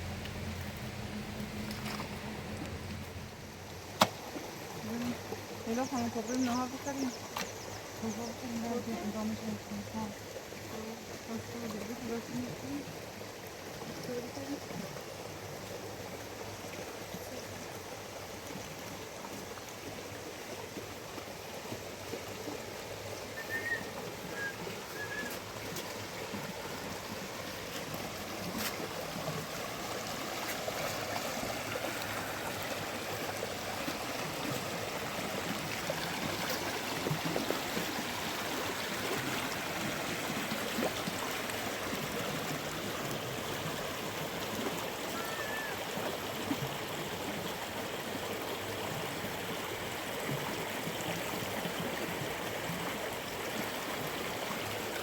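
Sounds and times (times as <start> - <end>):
rushing water: 0.0 - 55.0
faint high chirp: 23.3 - 25.4.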